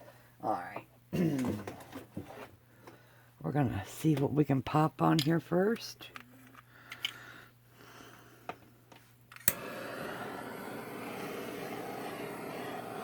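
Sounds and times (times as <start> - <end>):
torch ignition snap: 9.3 - 13.0
torch flame hissing: 9.4 - 13.0.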